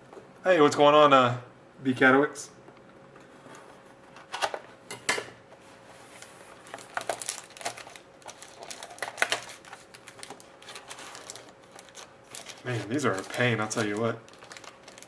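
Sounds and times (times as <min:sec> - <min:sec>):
cardboard and wrappers crinkling: 0:06.1 - 0:15.0.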